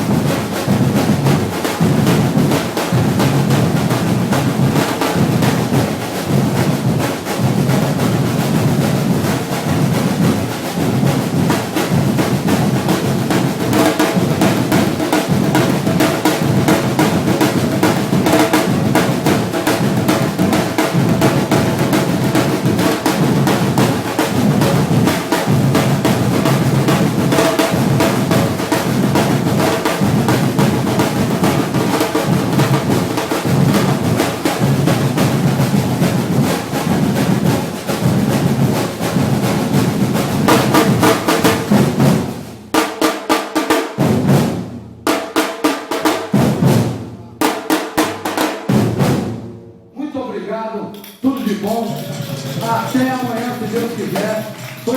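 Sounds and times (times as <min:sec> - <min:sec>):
drum ensemble playing: 0:00.0 - 0:54.9.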